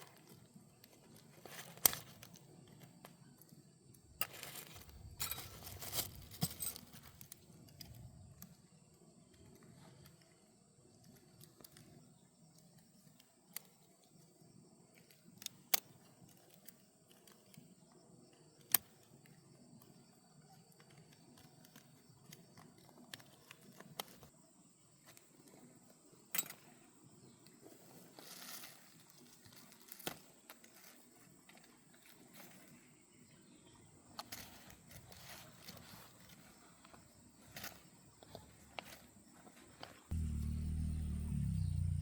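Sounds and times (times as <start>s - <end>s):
metal tools clinking: 4.2s - 7.1s.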